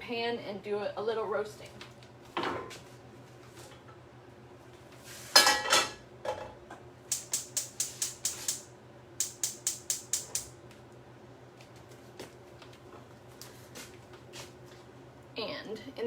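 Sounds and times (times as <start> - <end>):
metal pan clattering on stovetop: 5.4 - 6.4
gas burner igniter clicking: 7.1 - 10.6.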